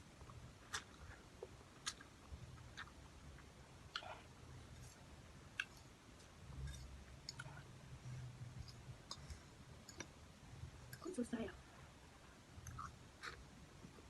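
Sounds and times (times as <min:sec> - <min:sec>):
faint low hum: 0:00.0 - 0:14.0
person chewing noodles: 0:00.2 - 0:07.7, 0:12.6 - 0:13.4.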